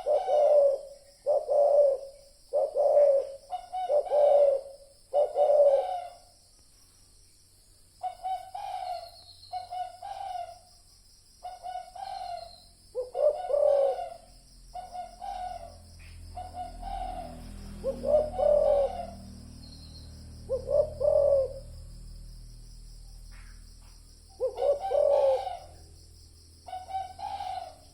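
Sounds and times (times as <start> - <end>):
doves cooing: 0.0 - 6.3, 8.0 - 10.7, 11.5 - 19.7, 20.4 - 21.8, 24.4 - 25.9, 26.6 - 27.9
high insect drone: 0.0 - 27.9.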